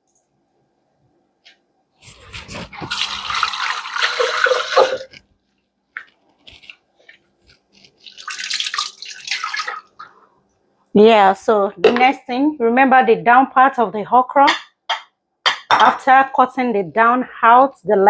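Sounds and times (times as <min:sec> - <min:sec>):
liquid pouring and splashing: 0:02.4 - 0:05.2, 0:07.9 - 0:10.2.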